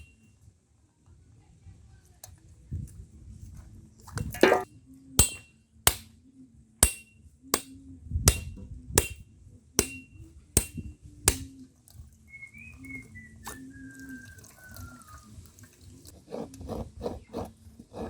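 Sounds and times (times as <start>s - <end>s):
knife chopping on wooden board: 10.6s - 11.5s.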